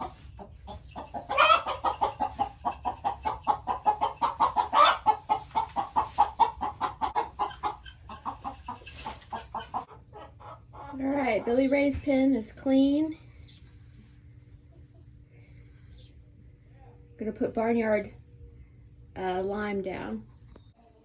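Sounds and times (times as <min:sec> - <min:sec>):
chicken squawks: 0:00.0 - 0:11.0
chickens clucking: 0:00.0 - 0:12.7, 0:13.4 - 0:15.4.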